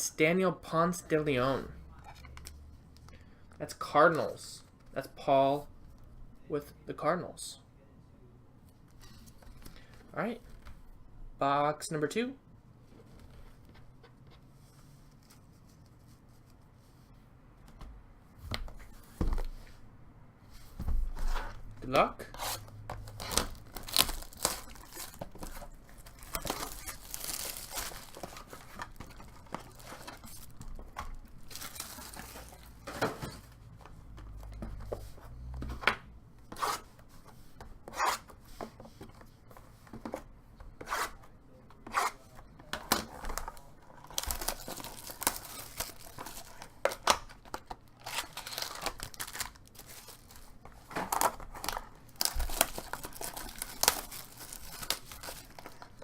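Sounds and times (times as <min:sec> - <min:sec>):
wrappers tearing and crinkling: 0:22.4 - 0:32.8, 0:43.3 - 0:56.0.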